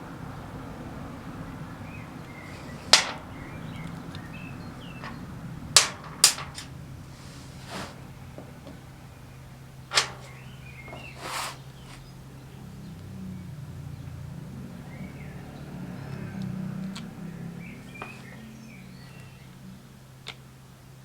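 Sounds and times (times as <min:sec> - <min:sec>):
low electrical hum: 0:01.1 - 0:14.4
short hiss: 0:11.0 - 0:12.0.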